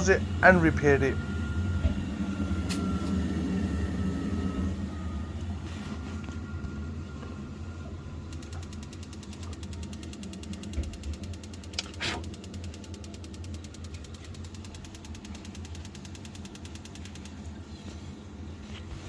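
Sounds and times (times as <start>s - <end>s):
low hum: 0.0s - 19.0s
ignition electrode ticking: 8.2s - 17.6s.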